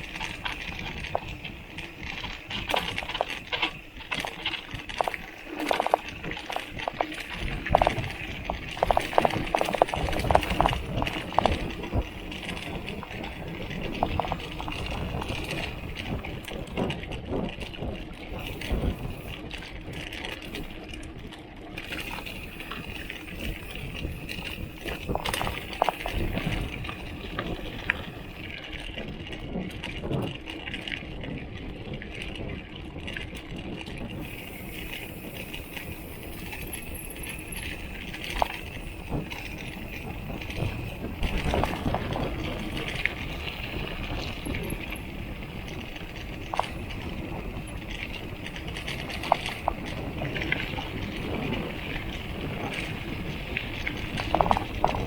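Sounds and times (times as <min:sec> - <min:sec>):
bike rolling on trail: 0:00.0 - 0:55.0.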